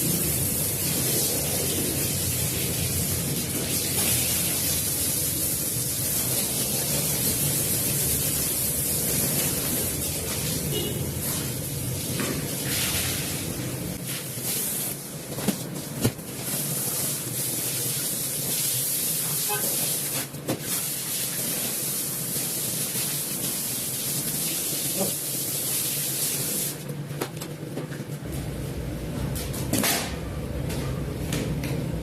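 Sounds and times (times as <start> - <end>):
water spraying onto rug: 0.0 - 15.0, 16.4 - 26.8.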